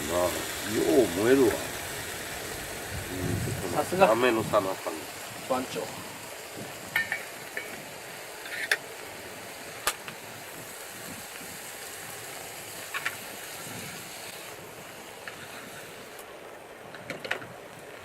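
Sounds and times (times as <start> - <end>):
wood fire crackling: 0.0 - 18.0.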